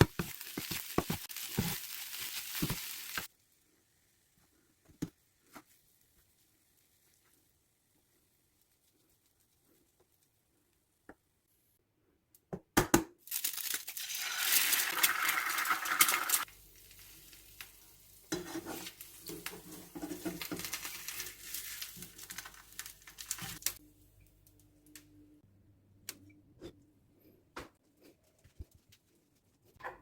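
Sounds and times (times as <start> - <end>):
packaging crinkling and tearing: 20.5 - 23.8.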